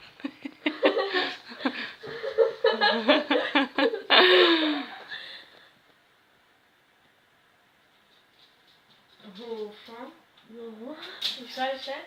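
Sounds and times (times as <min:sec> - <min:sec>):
girls laughing: 0:00.0 - 0:05.2.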